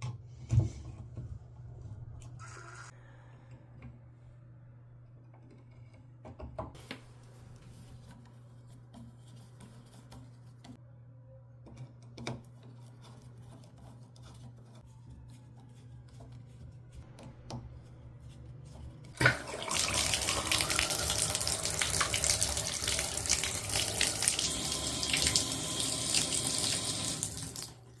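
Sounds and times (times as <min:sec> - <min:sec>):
shower water spraying: 0:19.2 - 0:28.0.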